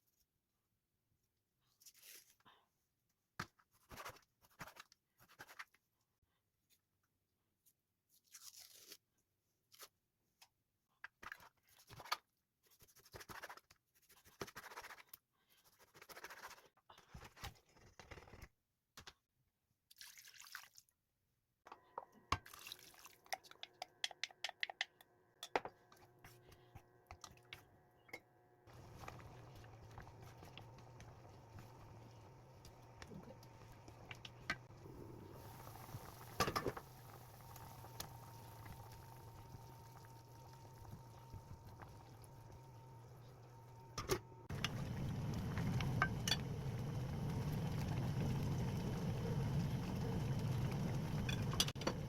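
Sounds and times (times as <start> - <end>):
low steady hum: 25.9 - 52.0.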